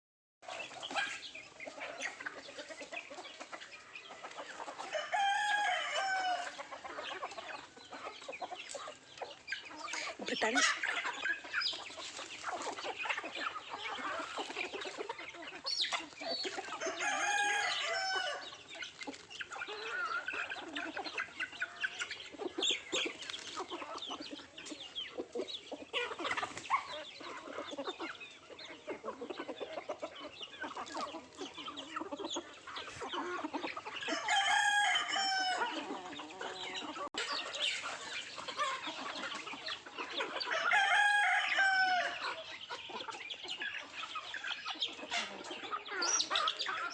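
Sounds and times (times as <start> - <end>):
chickens pecking at feed: 0.4 - 41.6
chickens clucking: 0.4 - 46.9
rooster crowing: 4.9 - 6.6, 16.8 - 18.4, 34.1 - 35.8, 40.5 - 42.2.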